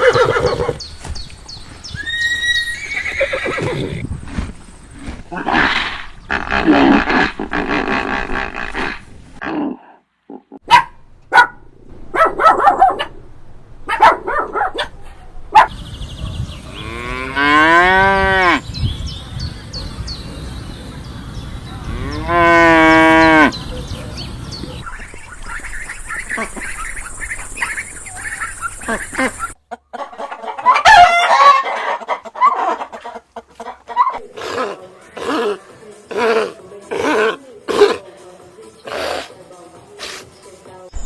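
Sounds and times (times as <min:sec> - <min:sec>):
horse whinnying: 0:02.0 - 0:04.1
dog barking: 0:10.6 - 0:13.2, 0:13.9 - 0:15.8
cows mooing: 0:16.7 - 0:18.6, 0:21.8 - 0:23.6.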